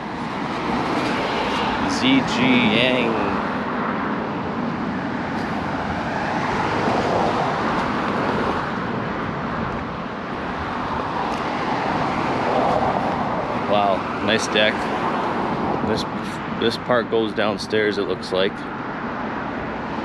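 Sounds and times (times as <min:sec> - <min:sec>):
road traffic rush: 0:00.0 - 0:20.0.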